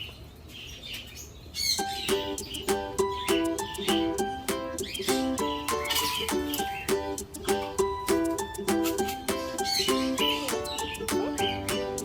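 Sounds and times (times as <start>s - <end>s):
plucked string instrument music: 1.8s - 12.0s.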